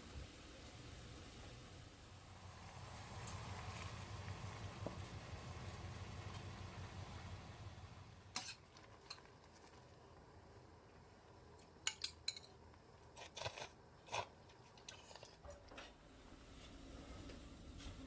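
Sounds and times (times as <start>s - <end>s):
kitchen utensils clinking: 11.9s - 12.6s.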